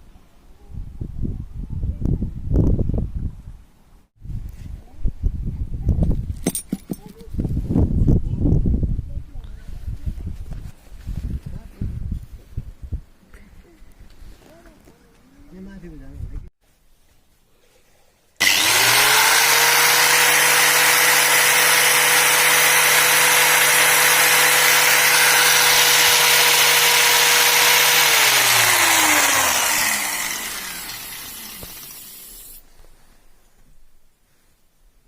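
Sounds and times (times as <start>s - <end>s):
electric motor whining: 18.4s - 32.6s.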